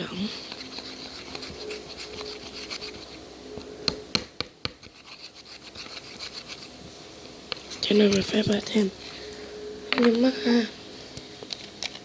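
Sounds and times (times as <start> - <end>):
slime stirred in container: 0.2 - 3.2, 4.8 - 6.7.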